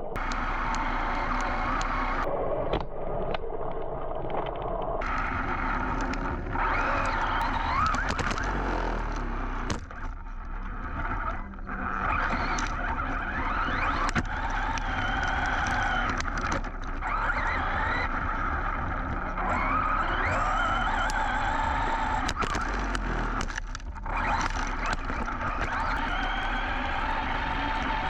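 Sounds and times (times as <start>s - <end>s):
electric motor whining: 0.2s - 2.3s, 5.0s - 28.0s
tyres scrabbling through dirt: 5.0s - 28.0s.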